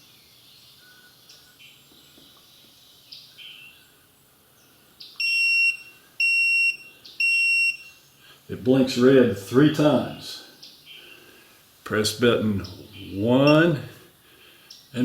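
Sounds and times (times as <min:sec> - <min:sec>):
high-pitched keypad beeps: 0:05.2 - 0:07.9.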